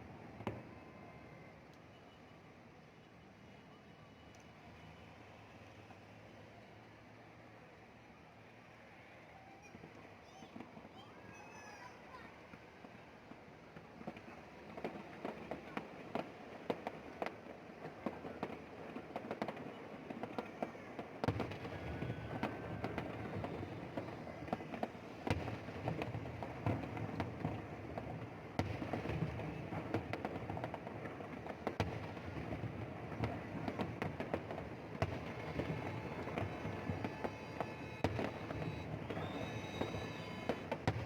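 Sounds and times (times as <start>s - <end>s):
fireworks bangs and crackles: 0.0s - 0.9s, 9.6s - 11.2s, 11.8s - 41.0s.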